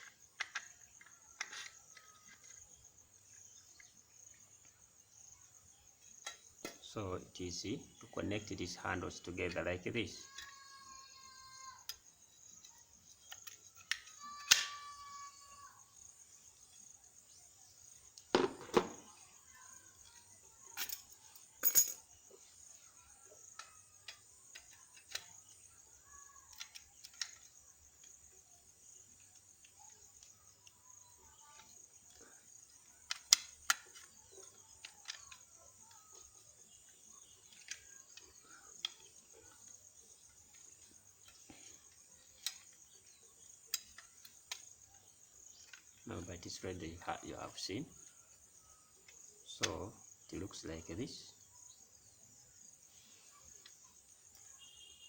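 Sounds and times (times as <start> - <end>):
metal lock parts clicking: 0.0 - 2.7, 10.2 - 10.6, 11.9 - 14.8, 20.7 - 22.0, 23.5 - 25.4, 26.4 - 28.1, 33.0 - 36.2, 42.3 - 43.1, 45.6 - 46.0
crickets chirring: 0.0 - 55.0
metal clinks: 20.8 - 22.1.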